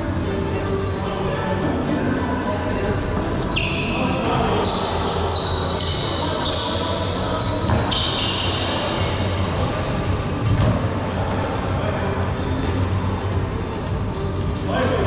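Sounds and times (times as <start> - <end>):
low hum of hall: 0.0 - 15.0
rubber shoes squeaking: 3.5 - 4.0, 4.6 - 10.1, 13.2 - 14.1.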